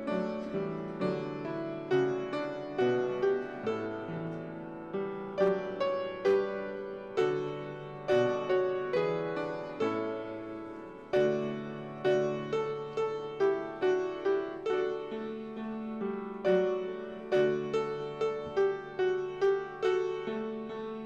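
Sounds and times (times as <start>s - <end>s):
gentle piano music: 0.0s - 21.0s.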